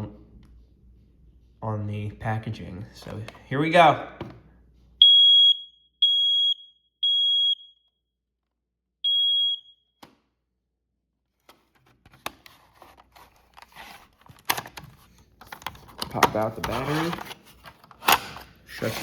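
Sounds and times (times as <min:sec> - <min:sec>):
high-pitched smoke alarm beeps: 0:05.0 - 0:08.0, 0:09.0 - 0:10.0
handling clicks and rustling: 0:11.4 - 0:19.0.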